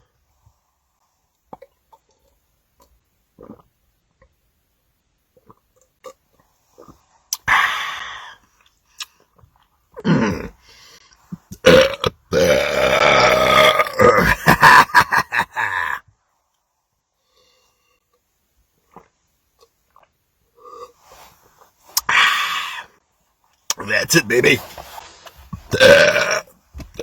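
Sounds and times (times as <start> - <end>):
man belching: 10.0 - 10.6, 11.5 - 16.0, 23.7 - 24.6, 25.7 - 27.0.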